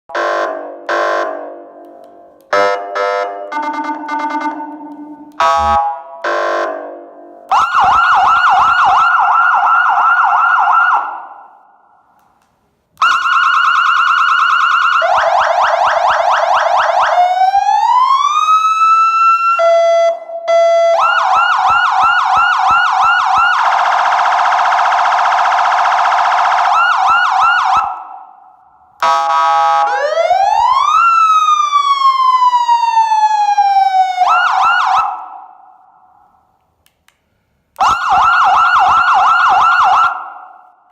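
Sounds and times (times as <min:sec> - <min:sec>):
electronic siren warbling and wailing: 0:02.6 - 0:06.8.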